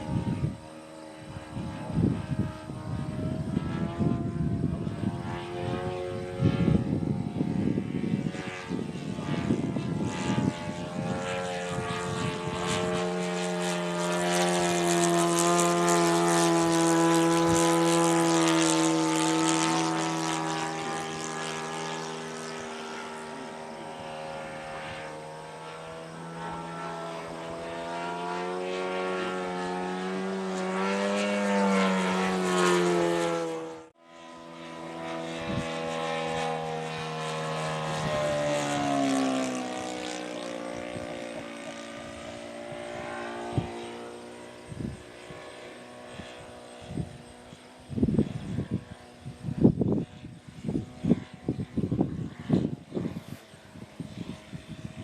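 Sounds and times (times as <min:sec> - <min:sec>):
model plane engine droning: 0:00.0 - 0:55.0.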